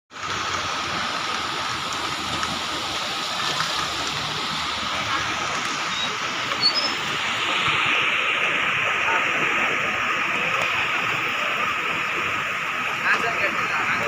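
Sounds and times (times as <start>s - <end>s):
river water rushing: 0.1s - 14.0s.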